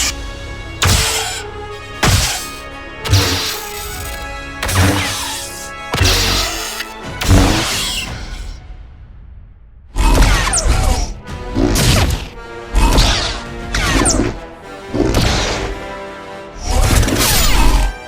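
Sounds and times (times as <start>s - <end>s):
lightsaber clashing hits: 0.8s - 1.4s, 2.0s - 8.4s.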